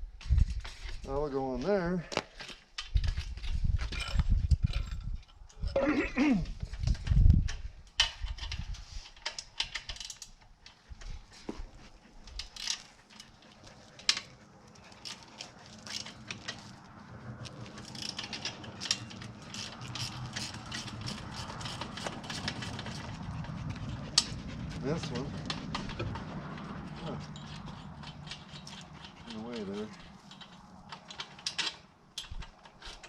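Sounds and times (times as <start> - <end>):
metal rattling: 12.2 - 33.0
ratchet-like clicking: 17.8 - 33.0.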